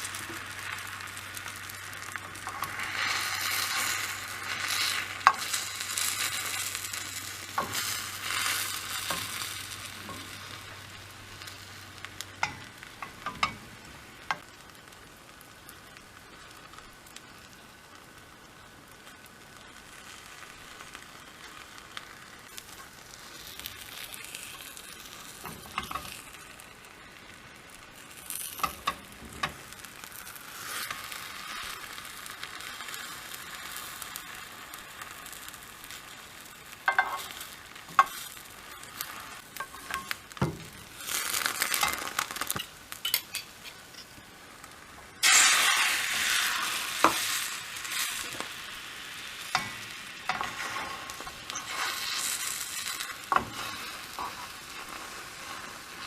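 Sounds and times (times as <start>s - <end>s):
egg sizzling in a pan: 0.0s - 56.0s
utensil tapping and scraping pan: 12.4s - 13.6s, 36.9s - 37.3s.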